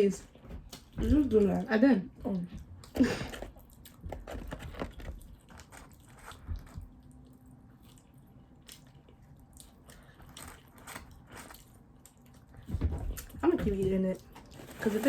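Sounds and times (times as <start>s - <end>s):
people chewing food: 0.0s - 15.0s.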